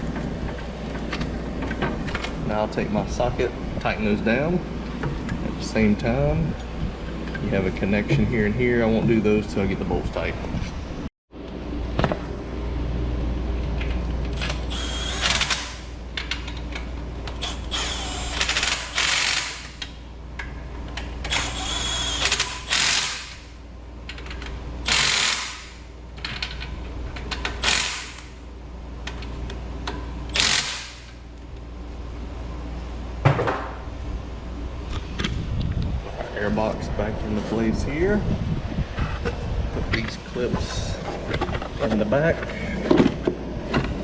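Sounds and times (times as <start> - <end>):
steady low hum: 0.0 - 44.0
ratchet wrench clicking: 14.4 - 16.6, 17.3 - 20.0, 21.2 - 23.5, 24.1 - 25.8, 27.3 - 28.4, 30.3 - 31.2.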